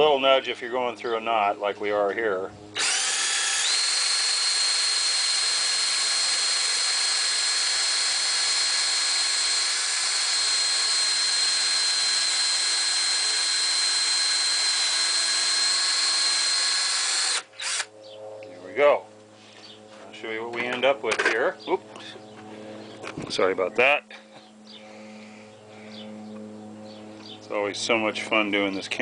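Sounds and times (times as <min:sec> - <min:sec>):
electric drill boring wood: 0:02.8 - 0:17.9.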